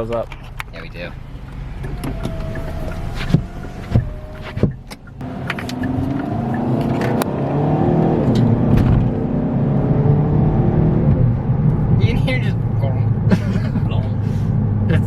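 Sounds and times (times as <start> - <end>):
car engine accelerating: 0.5 - 15.0
power windows whining: 1.4 - 9.2
window closing clunk: 1.8 - 7.3.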